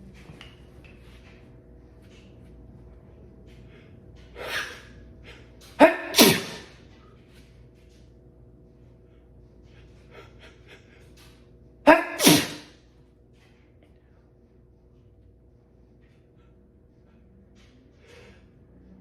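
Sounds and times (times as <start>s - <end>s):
faint steady hum: 0.0s - 19.0s
person sneezing: 5.7s - 6.8s, 11.9s - 12.8s.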